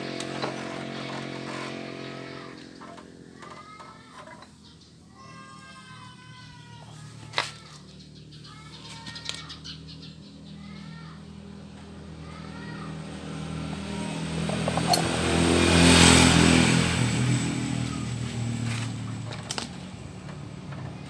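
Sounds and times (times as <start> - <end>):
passing vehicle engine: 0.0 - 3.4, 11.2 - 21.0.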